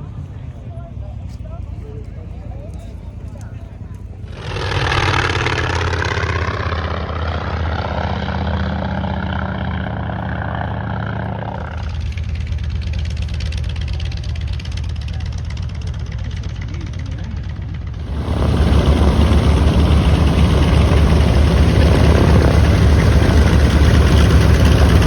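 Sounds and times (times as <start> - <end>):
engine running with low hum: 0.0 - 25.0
loud rushing noise: 4.2 - 12.2, 18.0 - 25.0.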